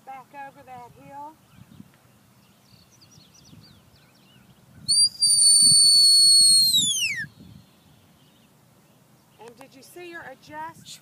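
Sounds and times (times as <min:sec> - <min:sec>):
high sliding whistle: 0:04.9 - 0:07.3.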